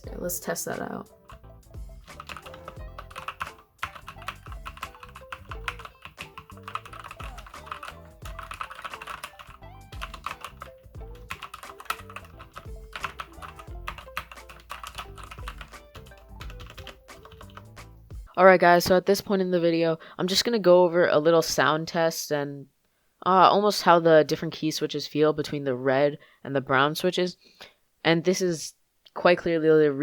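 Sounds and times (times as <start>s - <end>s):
background music: 0.0s - 19.0s
mechanical keyboard typing: 2.2s - 17.6s.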